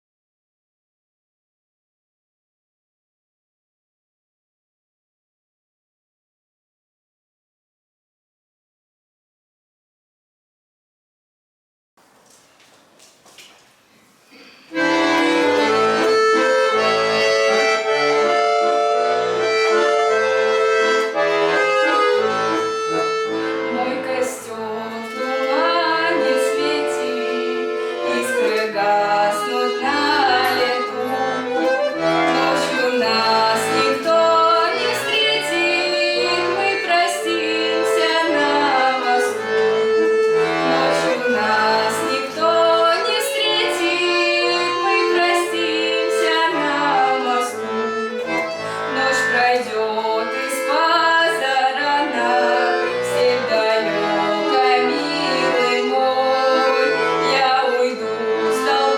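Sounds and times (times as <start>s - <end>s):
accordion playing: 14.5s - 58.9s.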